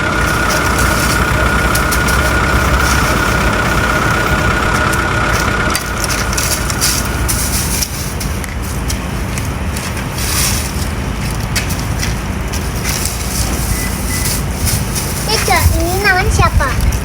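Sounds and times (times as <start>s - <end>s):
steady high tone: 0.0s - 8.1s
truck engine running: 0.0s - 17.0s.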